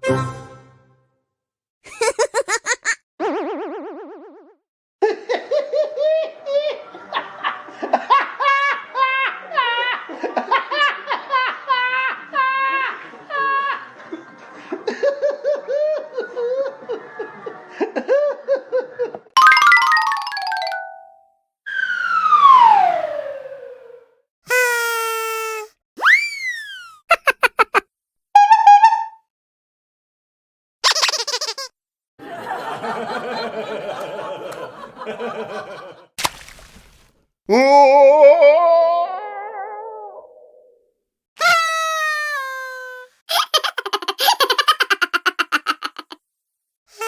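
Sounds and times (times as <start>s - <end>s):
crowd laughing: 5.1s - 19.3s, 32.2s - 36.1s, 43.3s - 46.2s
squeaky giggle sound effect: 24.5s - 27.8s, 30.8s - 31.7s, 41.4s - 46.2s
high-pitched burst of laughing: 30.9s - 31.7s, 43.3s - 46.2s.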